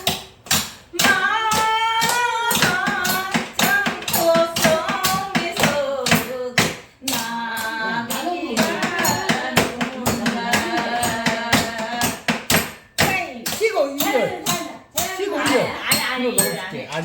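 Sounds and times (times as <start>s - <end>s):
hand claps: 0.0s - 16.5s
person singing: 1.0s - 12.3s.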